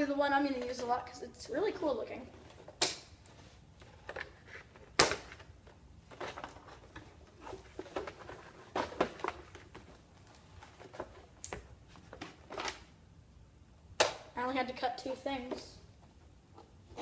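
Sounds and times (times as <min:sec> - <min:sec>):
plastic and cardboard rustling: 0:01.8 - 0:13.0.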